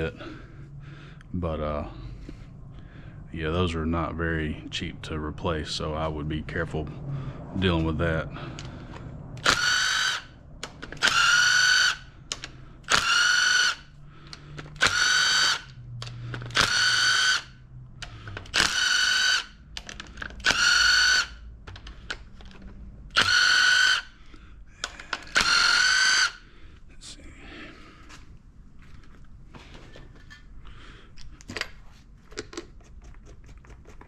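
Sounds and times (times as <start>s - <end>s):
cordless power tool whining: 9.4s - 19.6s, 20.2s - 21.4s, 23.1s - 24.2s, 24.8s - 26.4s.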